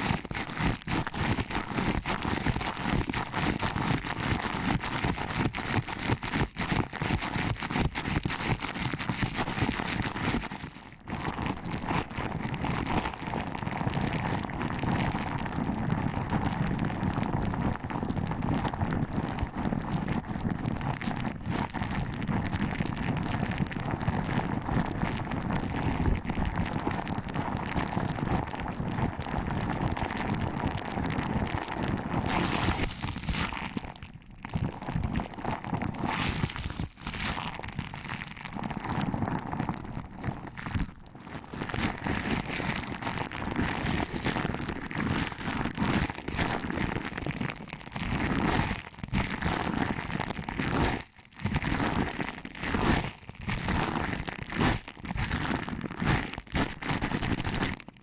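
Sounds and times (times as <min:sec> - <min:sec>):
fingers rubbing microphone: 0:31.1 - 0:46.8.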